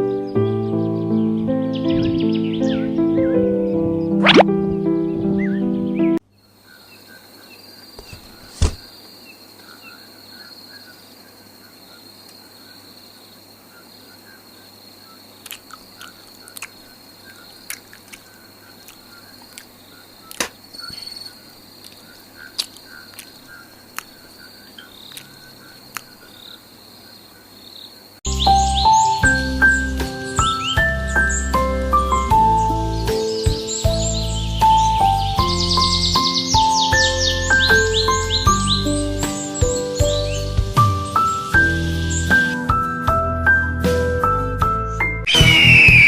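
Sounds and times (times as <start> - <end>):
faint chirping: 4.0 - 42.5, 44.9 - 46.0
high-pitched trill: 45.3 - 46.0.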